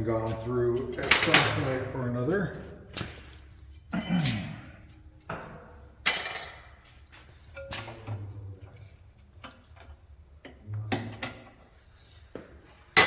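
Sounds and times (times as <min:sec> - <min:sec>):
metal brake parts clanking: 0:01.0 - 0:01.8, 0:04.0 - 0:06.7.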